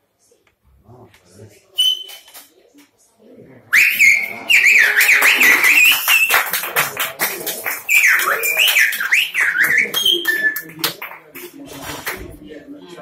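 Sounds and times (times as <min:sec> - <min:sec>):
person whistling speech: 0:01.8 - 0:02.3, 0:03.7 - 0:06.7, 0:07.6 - 0:10.9.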